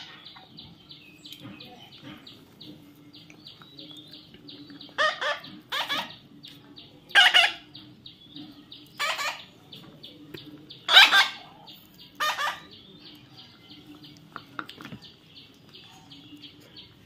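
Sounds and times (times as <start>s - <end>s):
baby parrot squawking: 5.0s - 6.2s, 7.1s - 7.7s, 9.0s - 9.5s, 10.9s - 11.5s, 12.2s - 12.7s.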